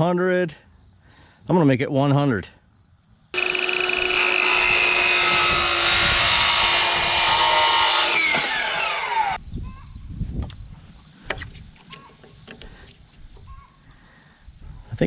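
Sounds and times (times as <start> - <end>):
power saw cutting timber: 3.4 - 9.4.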